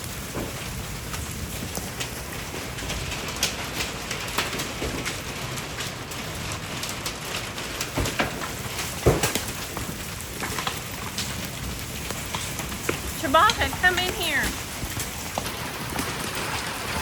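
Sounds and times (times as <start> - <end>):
freezing rain falling: 0.0 - 17.0
sharp ticks and clicks: 12.3 - 15.5.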